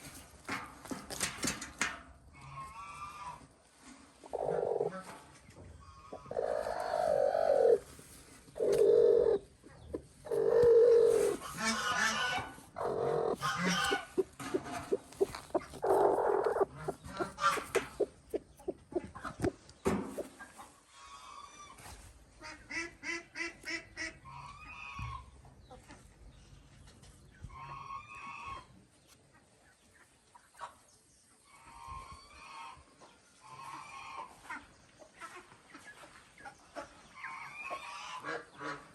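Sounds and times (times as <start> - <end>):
ducks quacking: 11.2 - 19.5, 37.8 - 38.9.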